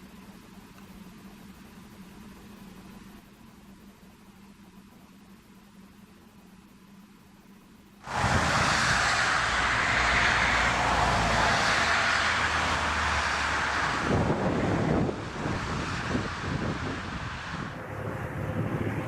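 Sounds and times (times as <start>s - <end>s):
aircraft engine noise: 8.0s - 19.0s
wind buffeting microphone: 8.0s - 19.0s.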